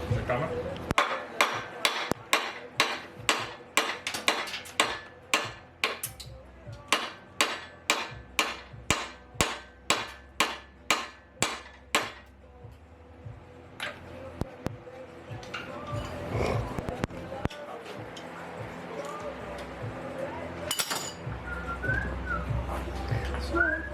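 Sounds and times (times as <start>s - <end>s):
hammer knocking on metal: 1.0s - 6.0s.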